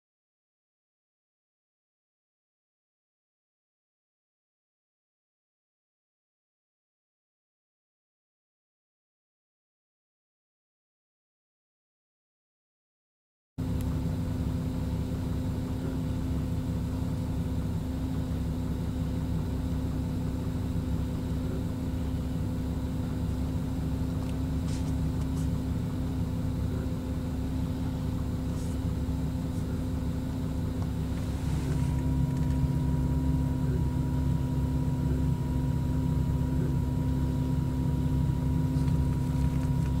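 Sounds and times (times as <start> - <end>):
car engine idling: 13.6 - 40.0
higher steady tone: 18.2 - 40.0.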